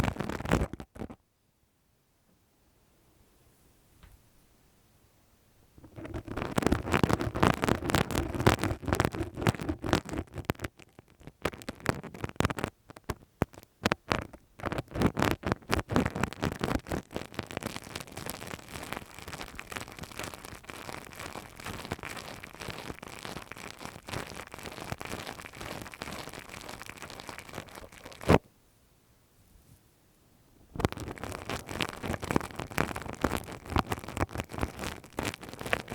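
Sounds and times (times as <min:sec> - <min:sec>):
scratching and crackling clicks: 0:00.0 - 0:01.2, 0:05.8 - 0:28.5, 0:30.7 - 0:35.9.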